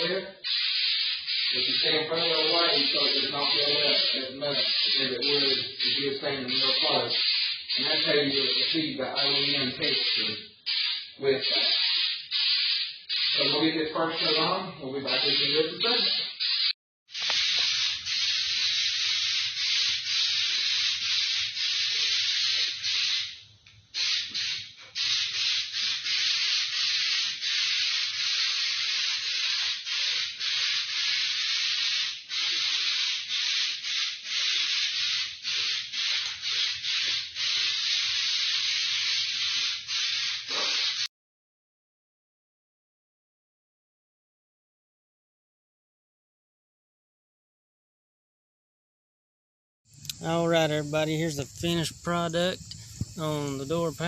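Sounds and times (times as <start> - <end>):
aerosol can spraying hiss: 0.5 - 11.0, 11.6 - 13.5, 15.1 - 41.1, 49.9 - 54.0.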